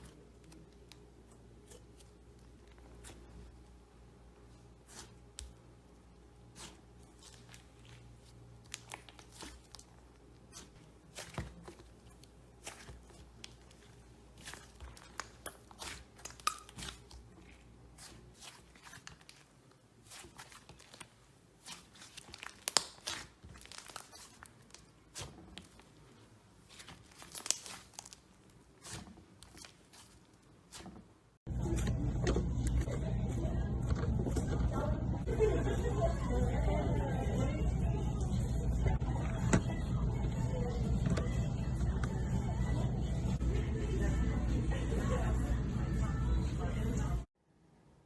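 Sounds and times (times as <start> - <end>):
slime clicking and popping: 22.1 - 25.3.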